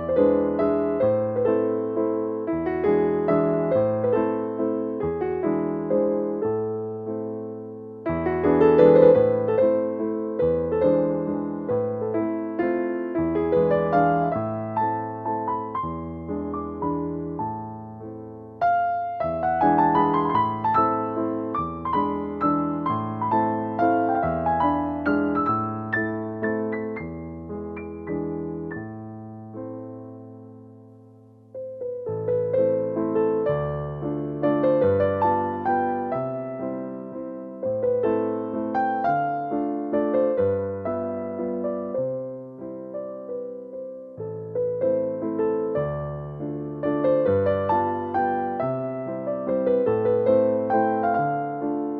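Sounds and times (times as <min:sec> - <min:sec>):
gentle piano music: 0:00.0 - 0:51.9.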